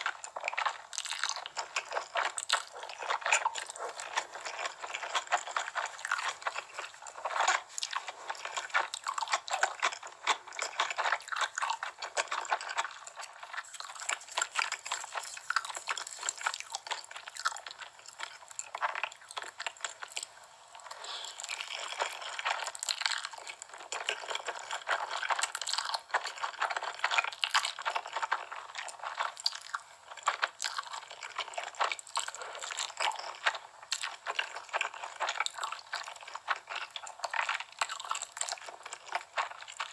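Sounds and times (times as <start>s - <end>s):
crunchy bites and chewing: 0.0s - 39.9s.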